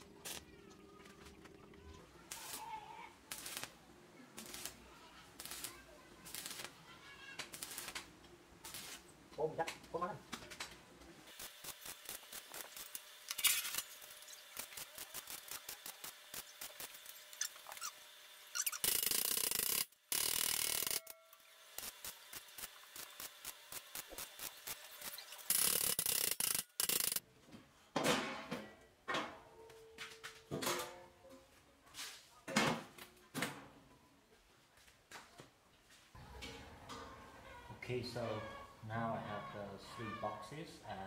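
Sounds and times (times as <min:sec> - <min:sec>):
fast ratchet clicks: 0:11.4 - 0:17.5, 0:18.6 - 0:21.1, 0:21.8 - 0:27.2.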